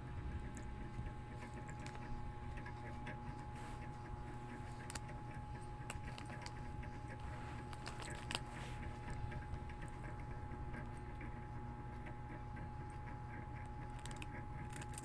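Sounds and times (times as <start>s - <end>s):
faint steady hum: 0.0s - 15.0s
cat chewing cracker: 0.2s - 11.4s, 12.8s - 15.0s.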